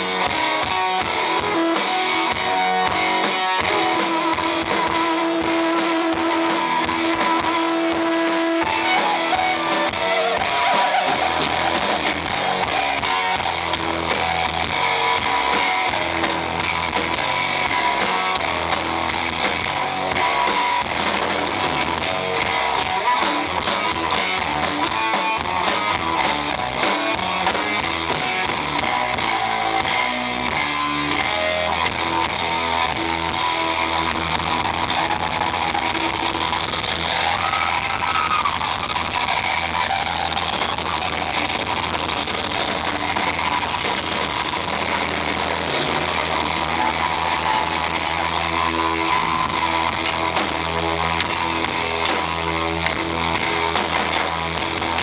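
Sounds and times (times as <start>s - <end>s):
distorted rock band playing: 0.0s - 55.0s.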